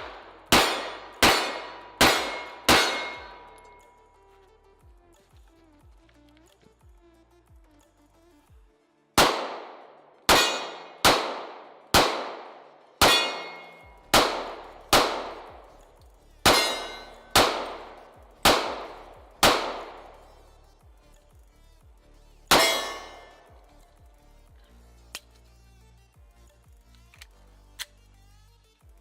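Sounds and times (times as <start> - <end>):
rounds striking steel target: 0.0 - 4.0, 9.2 - 20.4, 22.5 - 23.5.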